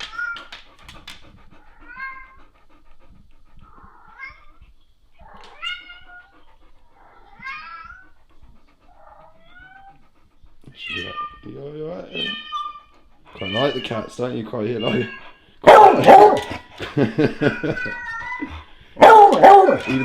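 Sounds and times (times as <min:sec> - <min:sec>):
cats meowing through speakers: 0:05.2 - 0:06.3, 0:07.0 - 0:08.1, 0:10.8 - 0:15.4, 0:17.5 - 0:18.5, 0:19.1 - 0:20.0.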